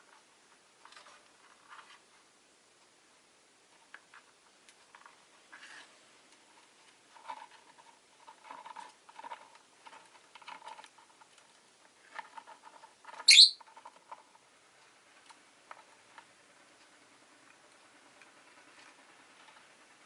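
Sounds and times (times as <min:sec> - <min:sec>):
lovebirds clicking and scratching: 0:03.7 - 0:19.8
shrill bird chirp: 0:13.3 - 0:13.6.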